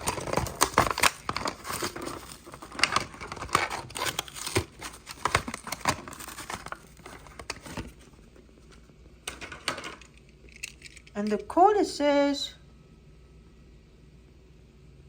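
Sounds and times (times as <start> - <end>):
cardboard ripping: 0.0 - 8.0
plastic blister crinkling: 0.0 - 11.2.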